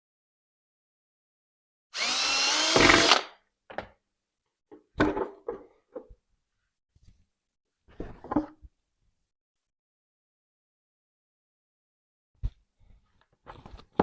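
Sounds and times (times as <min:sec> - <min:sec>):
power drill whining: 0:02.0 - 0:03.3.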